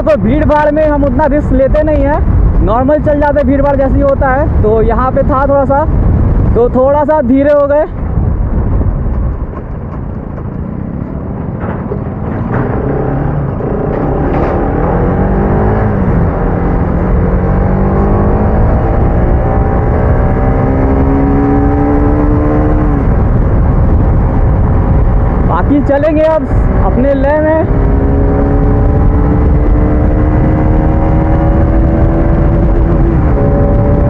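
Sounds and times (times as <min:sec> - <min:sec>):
wind buffeting microphone: 0:00.0 - 0:34.0
motorcycle engine accelerating: 0:08.0 - 0:25.5, 0:26.2 - 0:34.0.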